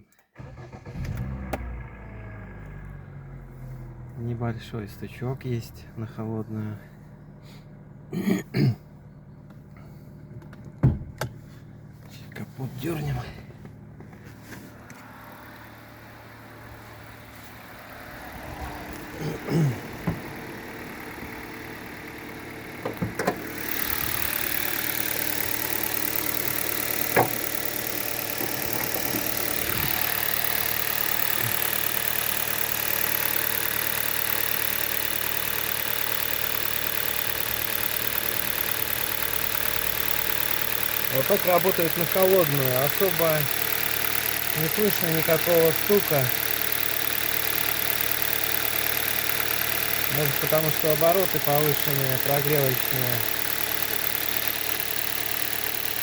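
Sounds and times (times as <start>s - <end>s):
car engine idling: 0.2s - 56.0s
thumps: 22.8s - 23.5s.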